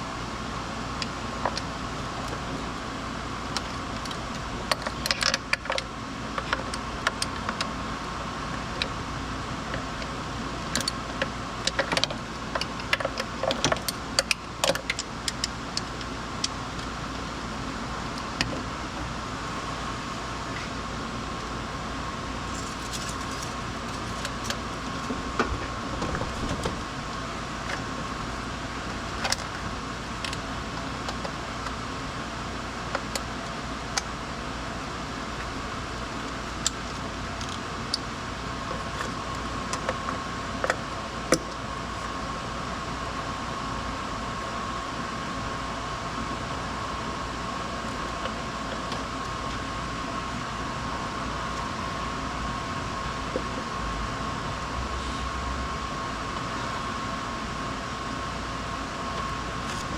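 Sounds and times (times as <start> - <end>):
steady mechanical hum: 0.0 - 59.9
metal parts clinking: 22.5 - 24.6.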